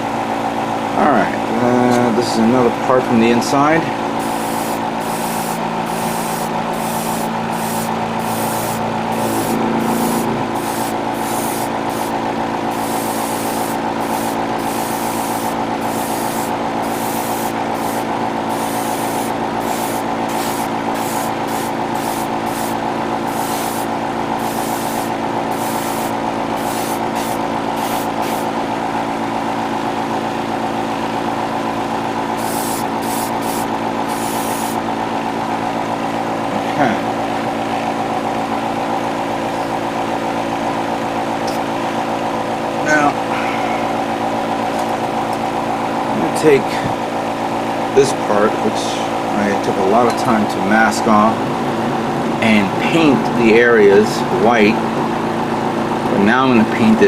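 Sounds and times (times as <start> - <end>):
compressor humming: 0.0 - 57.0
airbrush hissing bursts: 4.2 - 28.5, 32.4 - 34.8.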